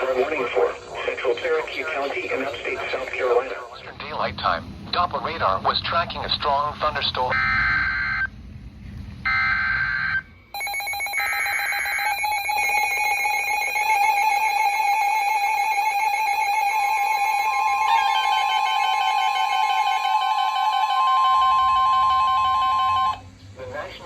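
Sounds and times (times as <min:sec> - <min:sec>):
buzzy two-tone alarm: 0:07.3 - 0:08.3, 0:09.3 - 0:23.2.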